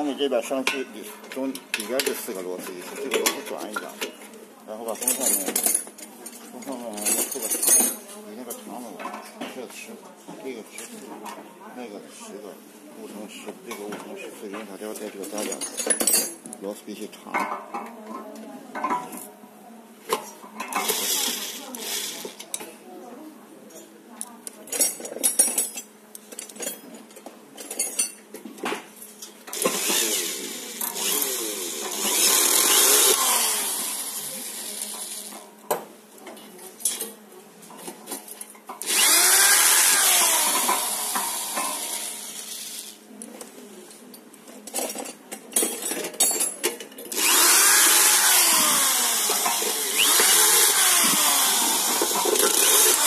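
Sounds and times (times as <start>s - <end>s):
electric screwdriver running: 29.6s - 35.3s, 38.8s - 43.0s, 47.1s - 53.0s.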